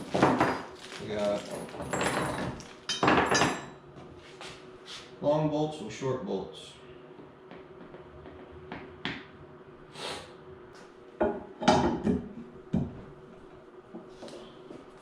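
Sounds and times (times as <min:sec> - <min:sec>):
knocks and clatter of metal parts: 0:00.0 - 0:03.7.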